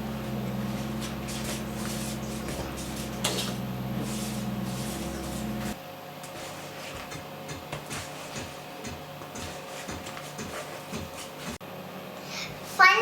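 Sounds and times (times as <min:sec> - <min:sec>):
electric hand mixer running: 0:00.0 - 0:05.8
sharp knocks: 0:07.0 - 0:11.6.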